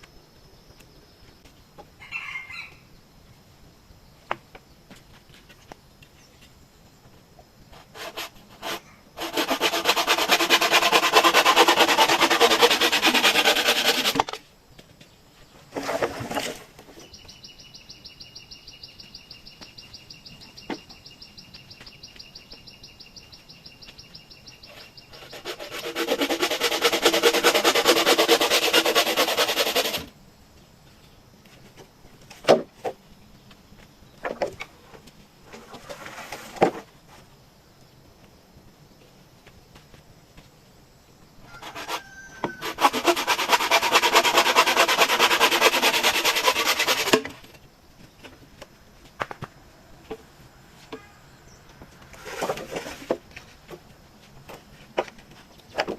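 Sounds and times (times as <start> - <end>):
high-pitched insect trill: 2.0 - 3.1
tool rasping through bamboo: 7.7 - 14.4, 25.1 - 30.1, 41.5 - 47.4.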